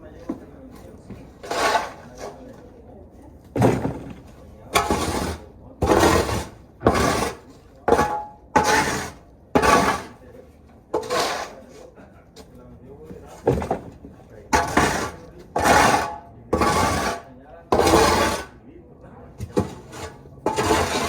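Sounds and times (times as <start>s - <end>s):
shovel scraping manure: 1.3s - 2.6s, 3.7s - 10.2s, 11.0s - 11.8s, 14.5s - 18.6s, 19.4s - 21.0s.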